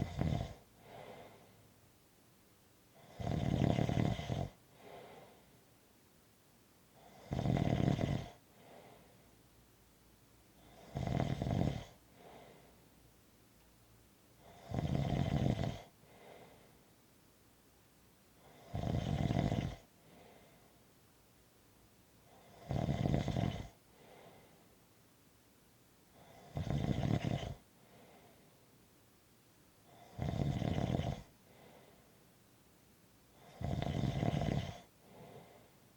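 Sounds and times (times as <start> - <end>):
snoring: 0.0 - 1.4, 2.9 - 5.4, 7.0 - 9.1, 10.6 - 12.6, 14.4 - 16.6, 18.4 - 20.4, 22.2 - 24.5, 26.2 - 28.3, 29.8 - 32.0, 33.4 - 35.7
faint breath: 0.7 - 1.8, 4.7 - 5.7, 8.5 - 9.5, 11.9 - 13.1, 15.9 - 17.0, 19.9 - 21.0, 23.8 - 24.8, 27.6 - 28.9, 31.2 - 32.3, 34.8 - 35.9.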